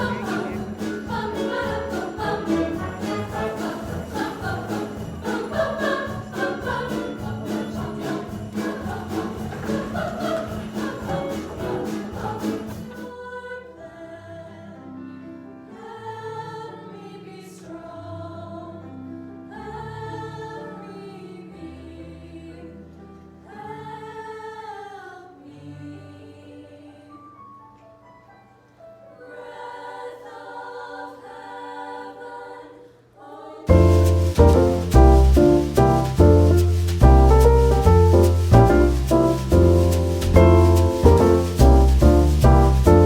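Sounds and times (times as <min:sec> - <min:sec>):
upbeat song with sleigh bells: 0:00.0 - 0:13.0, 0:33.7 - 0:43.0
slow choral singing: 0:00.0 - 0:27.4, 0:29.1 - 0:43.0.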